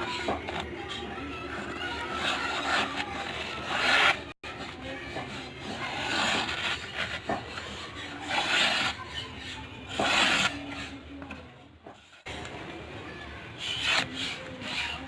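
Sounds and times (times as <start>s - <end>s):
file rasping strokes: 1.0s - 11.0s, 13.6s - 15.0s.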